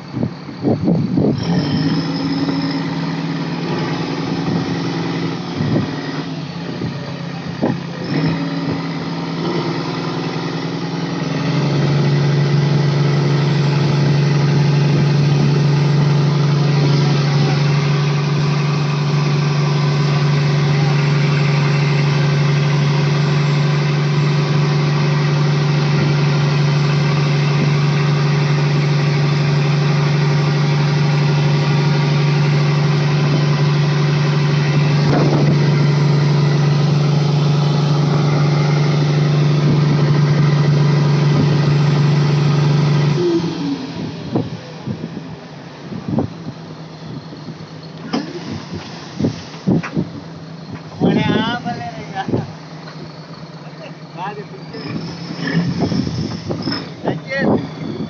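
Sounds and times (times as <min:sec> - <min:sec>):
boat engine running: 0:00.0 - 0:58.0.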